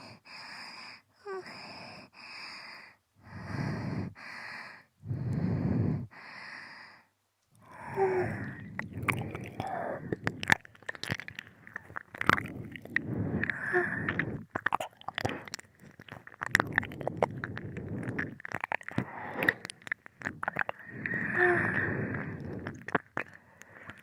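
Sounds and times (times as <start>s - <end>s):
breathy exhales: 0.0s - 10.6s, 11.5s - 24.0s
wet mouth clicks and smacking: 8.5s - 24.0s.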